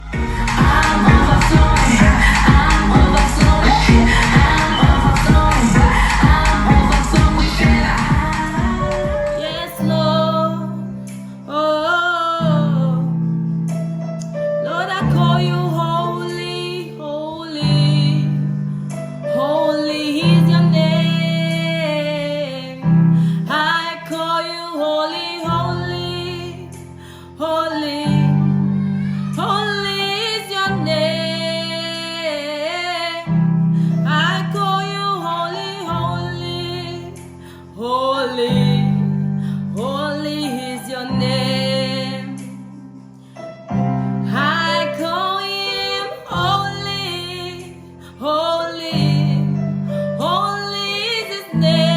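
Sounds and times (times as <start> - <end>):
sustained instrumental chords: 0.0 - 9.7
person singing with vibrato: 0.0 - 13.4, 14.2 - 18.5, 19.2 - 43.0, 44.2 - 51.9.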